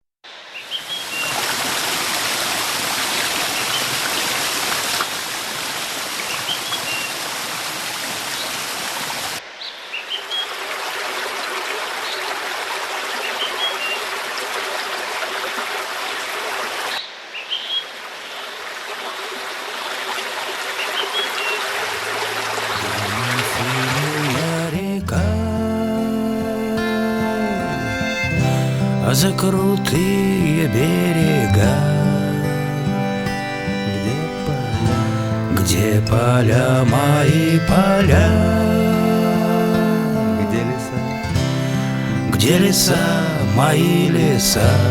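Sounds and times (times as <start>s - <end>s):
waterfall rushing: 0.7s - 9.4s, 18.0s - 44.9s
bird chirping: 16.9s - 18.4s, 20.8s - 36.1s
low music notes: 22.3s - 44.9s.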